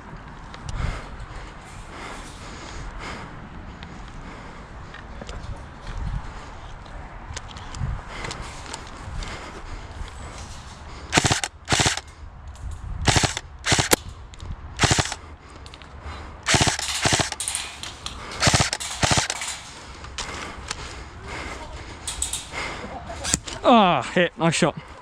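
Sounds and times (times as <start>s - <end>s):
airsoft guns firing bursts: 11.1s - 12.0s, 13.1s - 14.1s, 14.8s - 15.2s, 16.4s - 20.5s, 21.4s - 22.9s.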